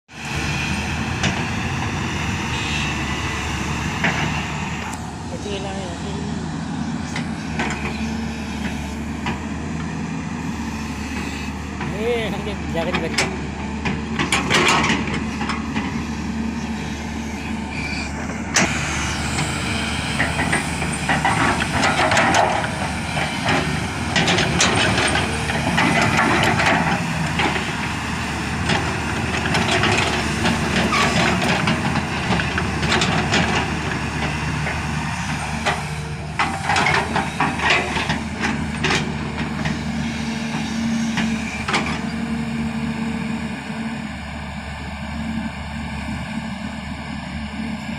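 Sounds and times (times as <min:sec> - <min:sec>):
diesel engine running: 0:00.1 - 0:47.9.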